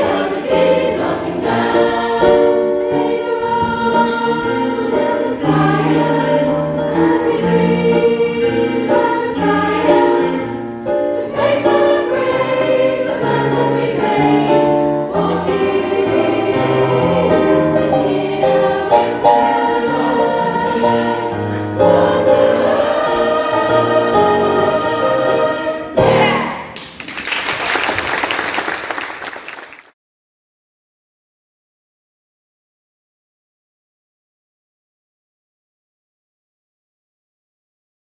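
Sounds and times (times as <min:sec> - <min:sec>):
choir singing a christmas song: 0:00.0 - 0:26.8.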